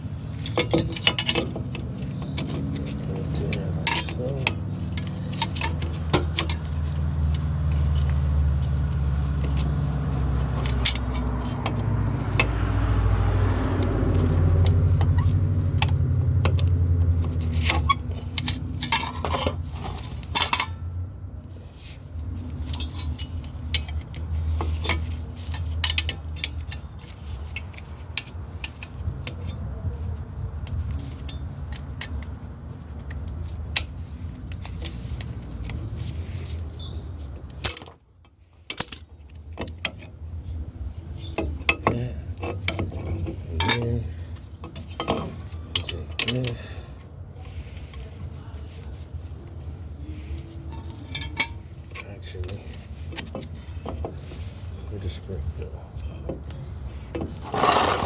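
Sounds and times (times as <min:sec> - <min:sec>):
metal parts and tools clinking: 0:00.0 - 0:12.6, 0:14.1 - 0:20.9, 0:21.5 - 0:55.5, 0:56.3 - 0:58.0
low engine rumble: 0:00.0 - 0:58.0.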